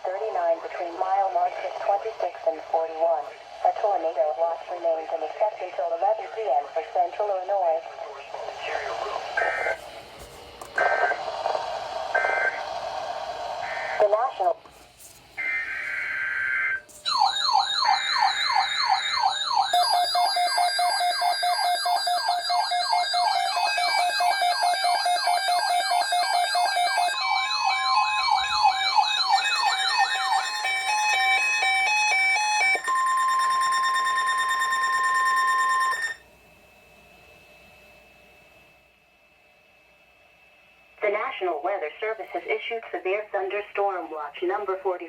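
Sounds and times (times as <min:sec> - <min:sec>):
steady alarm tone: 0:08.4 - 0:10.1, 0:10.7 - 0:14.4, 0:15.3 - 0:36.4
rising siren sweeps: 0:15.4 - 0:36.2
stepped beeping tones: 0:16.8 - 0:36.2.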